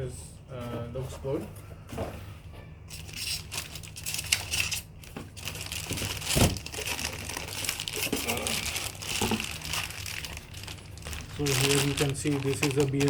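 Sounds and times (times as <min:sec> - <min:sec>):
packaging crinkling: 0:02.9 - 0:13.0.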